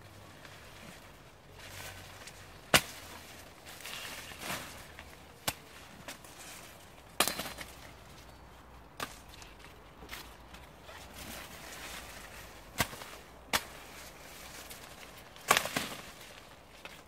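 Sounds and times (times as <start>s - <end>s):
dry leaves rustling: 0.1s - 17.0s
dry maize stalks snapping: 0.4s - 7.9s, 11.3s - 17.0s.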